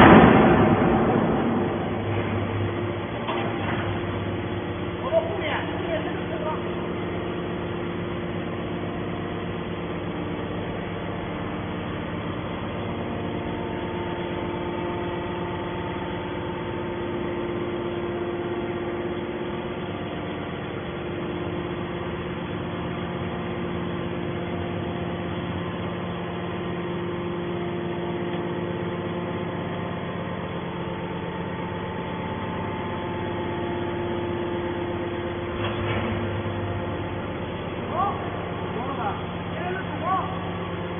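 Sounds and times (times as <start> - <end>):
hydraulic motor and pump humming: 0.0 - 40.9.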